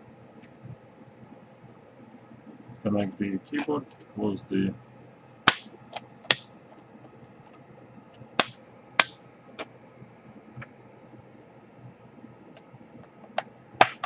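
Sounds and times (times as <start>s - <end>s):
plastic keyboard clips snapping: 13.4s - 14.0s.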